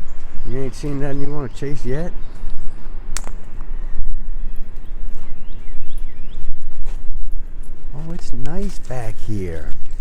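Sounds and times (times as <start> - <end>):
footsteps on dirt trail: 0.0 - 1.3, 4.5 - 10.0.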